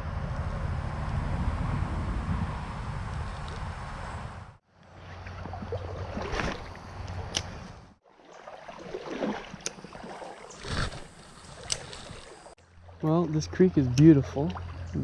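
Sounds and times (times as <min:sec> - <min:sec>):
creek water running: 0:04.8 - 0:15.0.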